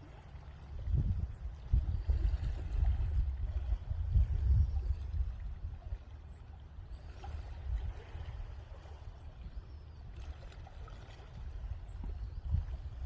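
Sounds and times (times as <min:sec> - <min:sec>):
small waves lapping: 0:00.0 - 0:13.0
wind rumble on microphone: 0:00.0 - 0:13.0
small splashes: 0:10.0 - 0:13.0.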